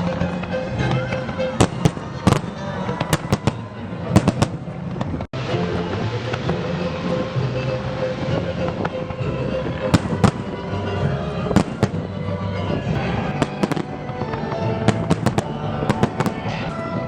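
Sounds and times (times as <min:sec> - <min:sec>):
fireworks bangs and cracks: 0:00.0 - 0:05.3, 0:11.5 - 0:12.1, 0:13.0 - 0:17.0
background music: 0:00.0 - 0:17.0.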